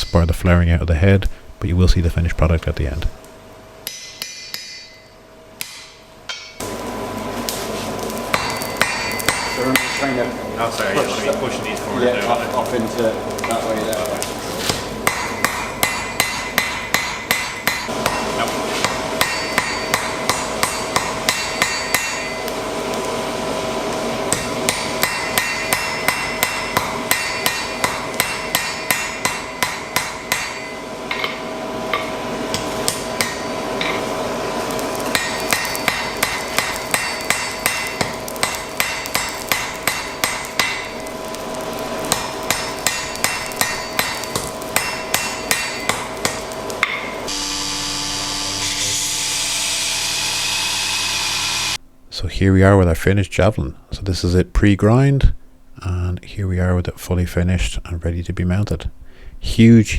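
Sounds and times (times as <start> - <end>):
hammer striking iron on anvil: 3.8 - 6.7, 8.3 - 10.2, 15.0 - 22.5, 24.3 - 34.1, 35.0 - 40.9, 42.1 - 47.4.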